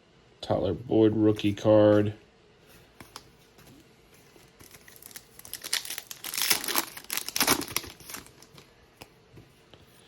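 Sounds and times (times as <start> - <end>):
foil wrapper crinkling: 4.4 - 8.7.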